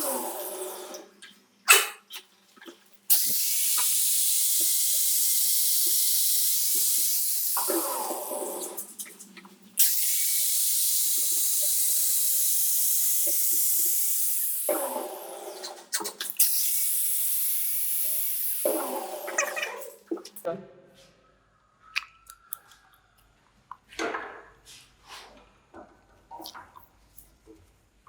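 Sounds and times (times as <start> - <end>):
compressed-air tool hissing: 3.1 - 9.0, 9.8 - 15.7.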